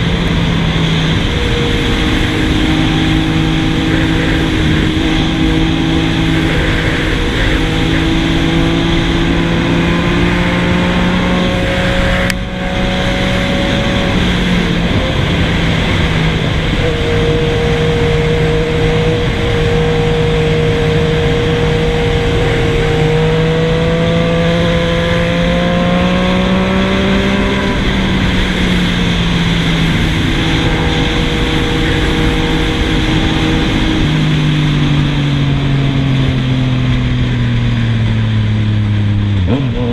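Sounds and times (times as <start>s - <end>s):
motorcycle engine running: 0.0s - 39.9s
rushing noise: 0.0s - 39.9s.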